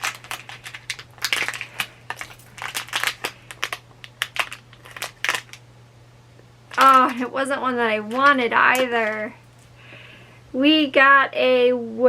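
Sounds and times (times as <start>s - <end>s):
packaging crinkling: 0.0s - 5.6s, 6.7s - 10.0s.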